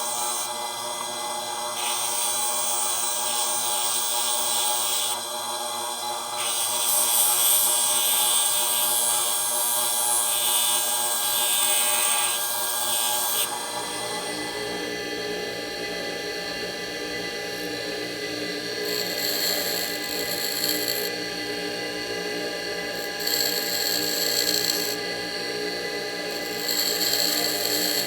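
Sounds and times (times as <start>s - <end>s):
grinder motor whine: 0.0s - 28.0s
harsh grinding hiss: 1.7s - 5.2s, 6.4s - 13.5s, 18.8s - 21.1s, 22.9s - 25.0s, 26.3s - 28.0s.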